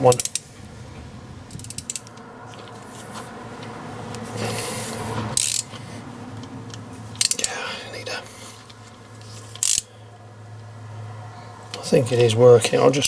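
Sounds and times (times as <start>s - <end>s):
steady low hum: 0.0s - 9.3s
metal rubbing and scraping: 0.1s - 6.0s.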